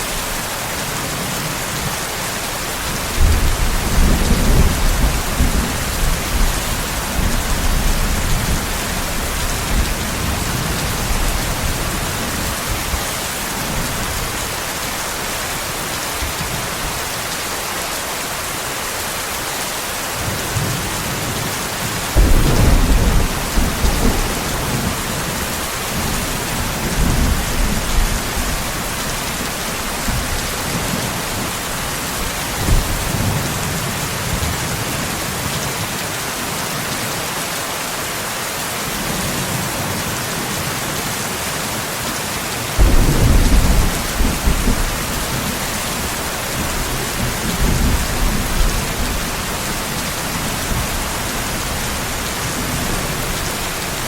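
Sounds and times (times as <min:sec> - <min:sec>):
rain hissing: 0:00.0 - 0:34.2, 0:42.6 - 0:54.0
thunder rumbling: 0:03.0 - 0:14.5, 0:22.1 - 0:33.5, 0:42.8 - 0:54.0.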